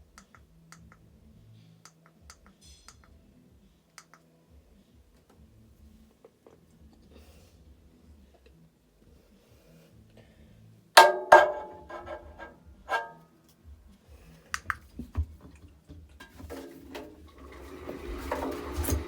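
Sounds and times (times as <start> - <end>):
loud knocks with ringing tone: 11.0 - 12.2.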